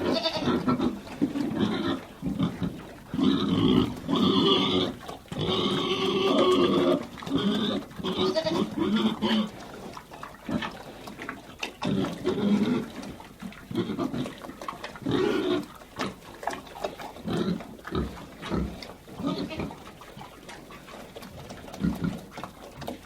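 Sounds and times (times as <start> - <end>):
sheep bleating: 0.0 - 0.6, 8.2 - 8.7
pigs grunting: 0.0 - 23.0.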